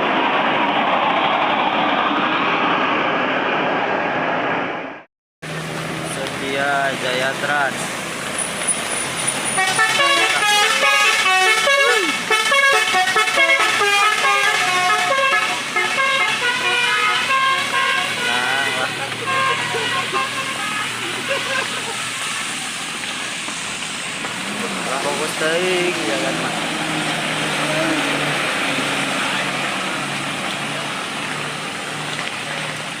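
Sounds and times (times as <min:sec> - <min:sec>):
bus engine running: 0:00.0 - 0:33.0
road and tyre noise: 0:00.0 - 0:33.0
bus horn playing chiming tune: 0:09.6 - 0:20.9.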